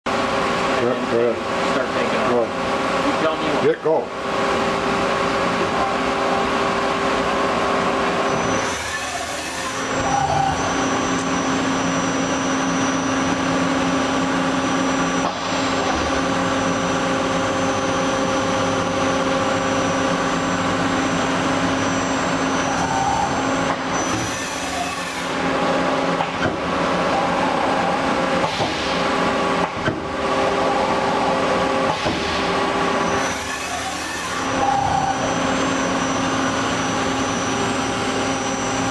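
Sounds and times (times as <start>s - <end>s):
lathe machine hum: 1.4s - 38.9s.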